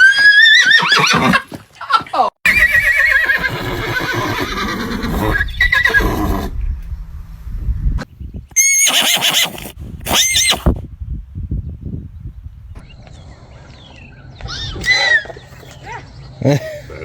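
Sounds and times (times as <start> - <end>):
horse neighing: 0.0 - 1.5, 2.5 - 6.5, 8.6 - 10.7.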